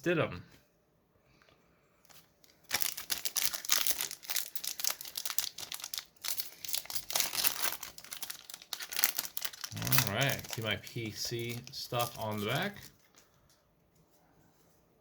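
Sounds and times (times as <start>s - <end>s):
foil wrapper crinkling and tearing: 2.1s - 13.4s.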